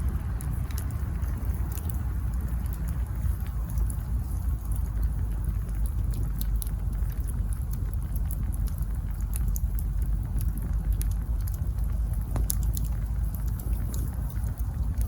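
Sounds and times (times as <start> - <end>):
campfire logs crackling: 0.0 - 15.0
fire popping: 0.0 - 15.0
steady low rumble: 0.0 - 15.0.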